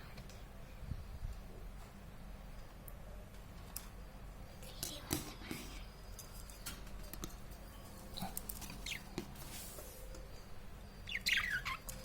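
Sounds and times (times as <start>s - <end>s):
parrot chirping: 8.2s - 9.1s, 10.9s - 12.0s.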